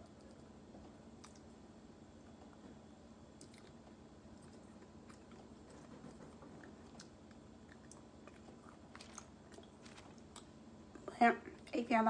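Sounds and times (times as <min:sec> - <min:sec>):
low steady hum: 0:00.0 - 0:12.0
close-up chewing: 0:01.2 - 0:01.5, 0:03.4 - 0:10.6.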